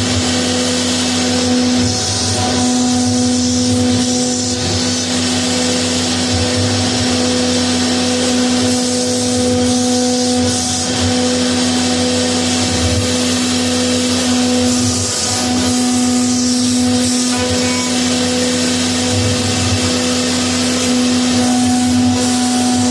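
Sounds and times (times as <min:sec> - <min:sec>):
cutter hissing: 0:00.0 - 0:22.9
router spindle whine: 0:00.0 - 0:22.9.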